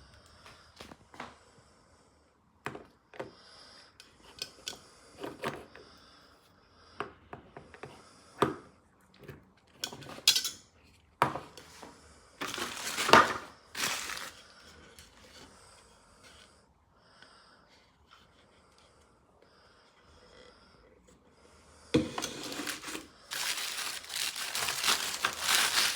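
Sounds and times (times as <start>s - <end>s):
rough scraping noises: 22.0s - 25.9s.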